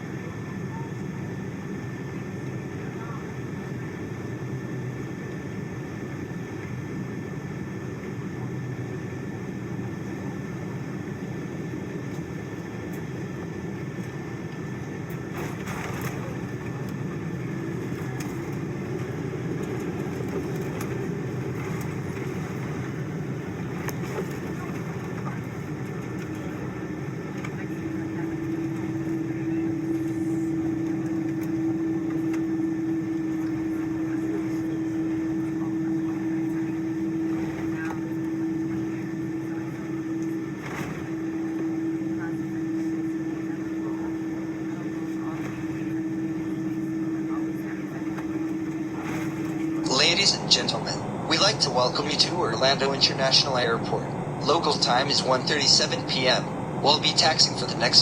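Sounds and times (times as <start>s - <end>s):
airliner engines rumbling: 0.0s - 58.0s
steady hum: 2.8s - 58.0s
thin high whine: 49.8s - 58.0s.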